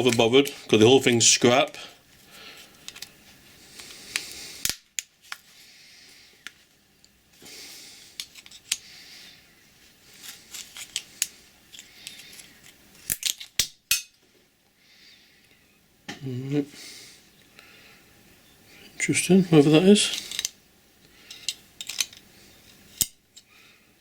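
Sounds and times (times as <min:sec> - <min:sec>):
hand tools clicking and snapping: 0:10.6 - 0:14.2, 0:20.1 - 0:20.6, 0:21.3 - 0:22.2, 0:22.9 - 0:23.5.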